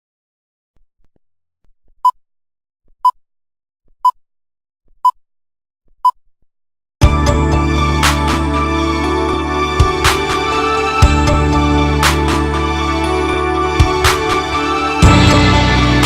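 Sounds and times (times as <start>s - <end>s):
loud music: 7.0s - 16.0s.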